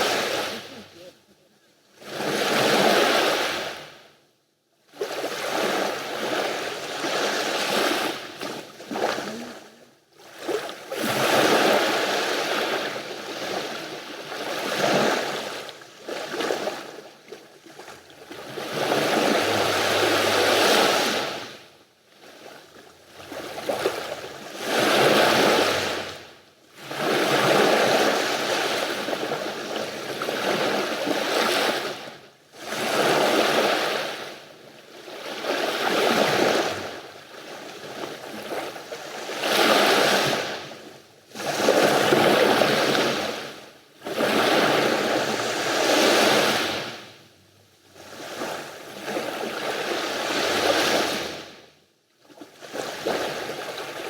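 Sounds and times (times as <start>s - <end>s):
sea waves washing onto shore: 18.2s - 21.6s, 41.5s - 47.1s.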